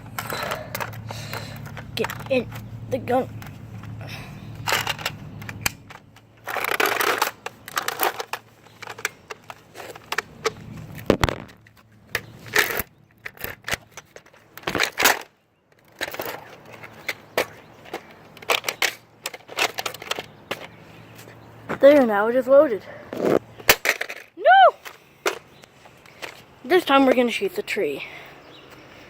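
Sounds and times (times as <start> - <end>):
plastic toy blaster clicks and knocks: 0.1 - 4.0, 4.6 - 20.7, 23.2 - 25.4.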